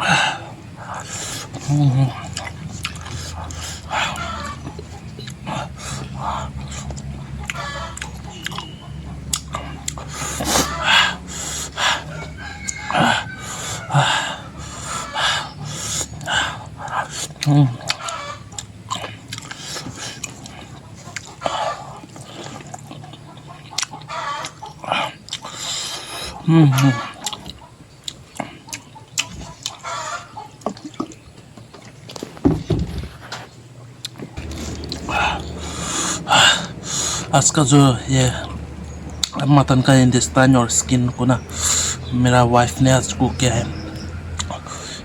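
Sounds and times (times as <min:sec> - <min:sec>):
person panting with hissing breaths: 0:00.0 - 0:07.4, 0:09.5 - 0:17.6, 0:19.1 - 0:22.7, 0:24.8 - 0:27.0, 0:34.4 - 0:37.4, 0:41.4 - 0:42.2, 0:44.3 - 0:45.0
chewing and lip-smacking: 0:00.0 - 0:32.4, 0:33.7 - 0:45.0.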